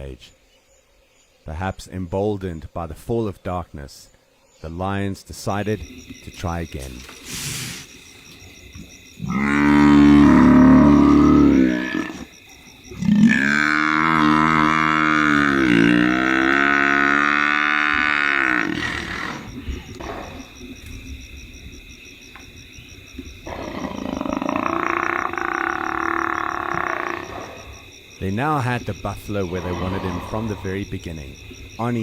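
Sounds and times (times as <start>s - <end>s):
buffalo bellowing in distress: 9.2s - 20.6s, 23.4s - 27.8s, 29.5s - 30.7s.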